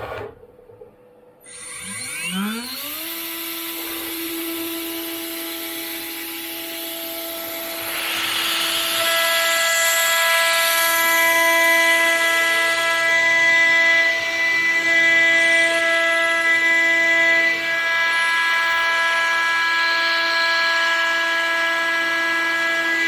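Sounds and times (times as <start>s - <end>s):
spindle whine: 1.4s - 6.4s
metal cutting noise: 1.4s - 19.8s.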